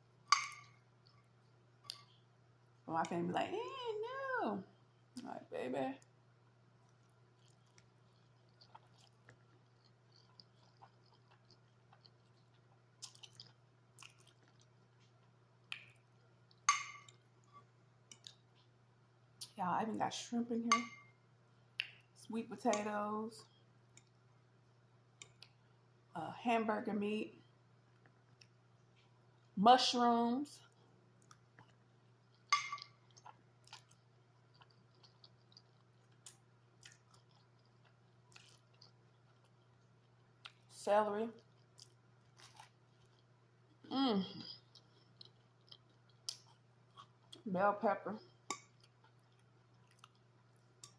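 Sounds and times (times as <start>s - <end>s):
faint low hum: 0.0s - 50.9s
chewing food: 0.3s - 3.2s, 6.7s - 19.6s, 23.4s - 25.8s, 27.9s - 29.6s, 30.6s - 47.5s, 48.2s - 50.9s.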